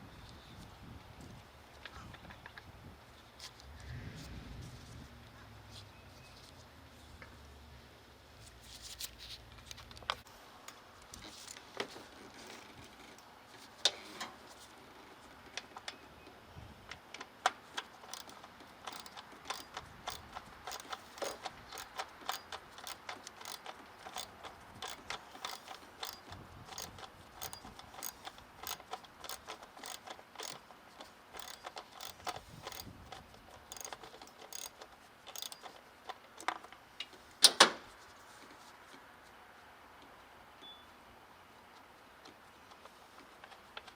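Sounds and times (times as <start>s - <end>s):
ratchet wrench clicking: 18.0s - 30.6s, 31.4s - 35.7s.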